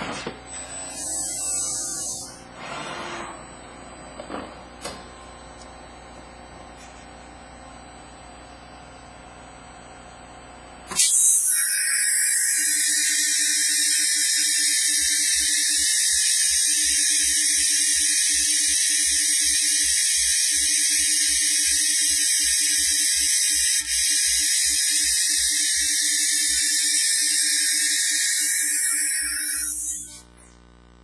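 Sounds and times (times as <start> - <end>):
engraving machine spindle whine: 0.0 - 4.6, 10.9 - 30.4.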